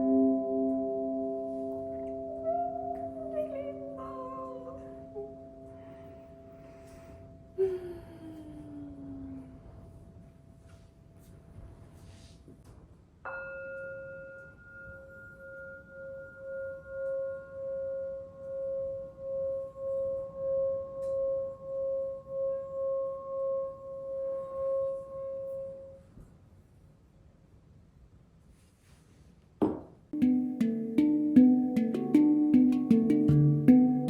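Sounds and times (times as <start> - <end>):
singing bowl tone: 0.0 - 7.5, 13.3 - 26.1.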